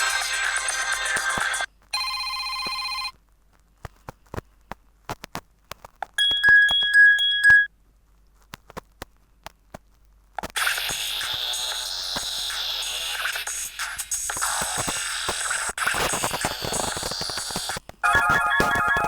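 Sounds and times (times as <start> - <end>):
phone ringtone melody: 18.1 - 19.0.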